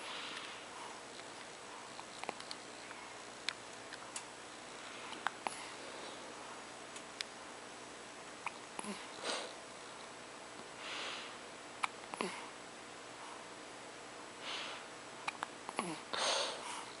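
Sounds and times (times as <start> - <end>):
soft breaths through nose: 0.0 - 1.0, 10.8 - 11.4, 14.4 - 14.9.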